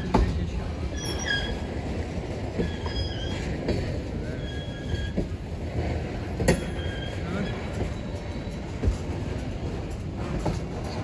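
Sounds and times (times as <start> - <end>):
train wheels squealing: 0.9 - 1.9, 2.5 - 9.1
wheels clacking over rail joints: 1.4 - 11.0.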